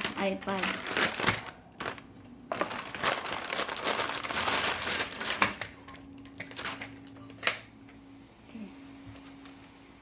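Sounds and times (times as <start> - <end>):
plastic packaging crinkling: 0.0 - 7.5.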